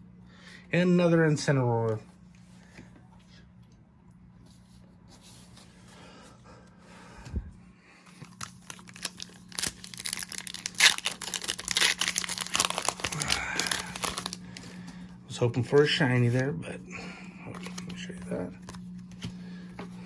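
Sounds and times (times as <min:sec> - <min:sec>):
foil wrapper crinkling and tearing: 0:08.0 - 0:14.8.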